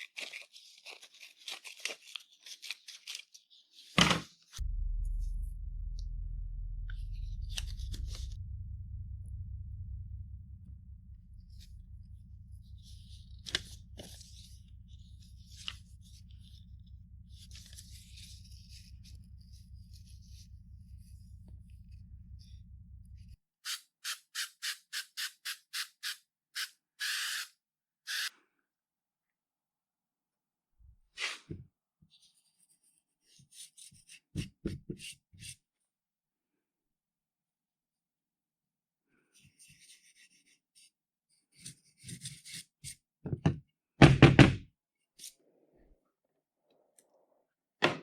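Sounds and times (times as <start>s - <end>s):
low hum: 4.6s - 23.4s
knocks: 43.3s - 44.7s.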